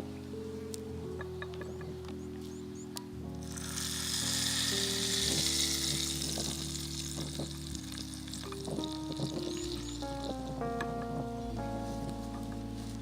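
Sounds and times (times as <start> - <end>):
background music: 0.0 - 13.0
food sizzling in frying: 3.4 - 10.4.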